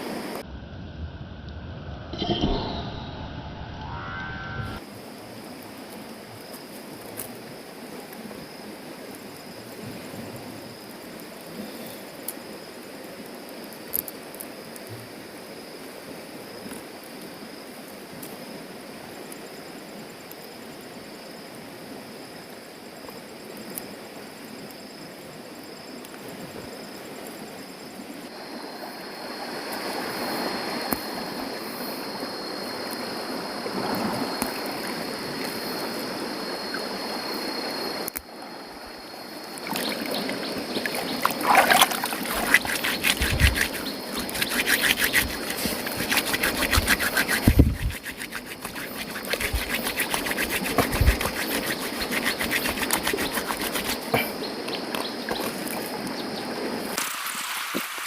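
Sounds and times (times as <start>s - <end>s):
thin high-pitched whine: 1.9s - 4.8s
river water running: 28.2s - 58.0s.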